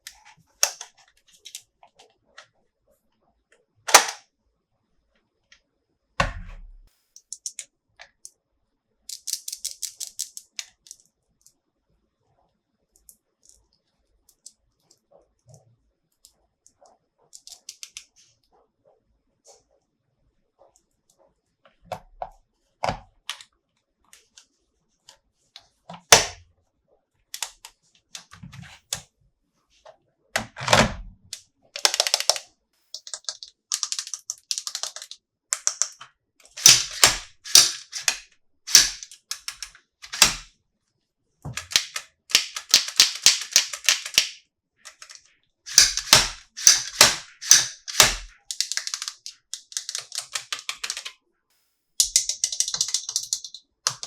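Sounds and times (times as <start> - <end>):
plastic toy figures clicking: 9.1 - 11.6, 31.8 - 40.5, 41.5 - 51.2, 52.0 - 54.0.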